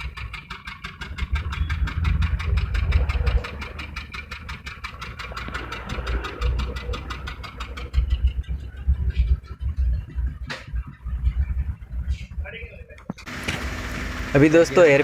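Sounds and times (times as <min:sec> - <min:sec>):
car engine idling with misfire: 0:00.0 - 0:09.8, 0:13.2 - 0:15.0.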